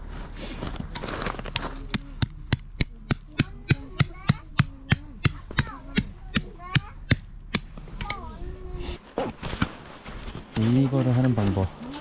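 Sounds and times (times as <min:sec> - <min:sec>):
hammer striking tent peg: 0:01.9 - 0:08.2.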